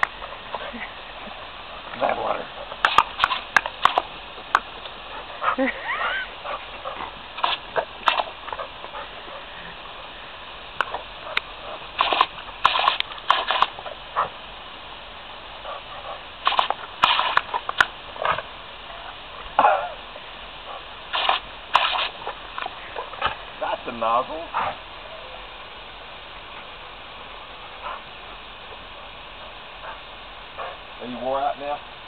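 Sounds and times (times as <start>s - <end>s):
dog splashing at hose spray: 1.3s - 9.2s, 10.9s - 14.4s, 15.7s - 18.5s, 21.0s - 23.9s
sharp clicks: 2.8s - 5.0s, 7.4s - 8.4s, 10.8s - 13.8s, 16.4s - 17.9s, 21.1s - 22.7s.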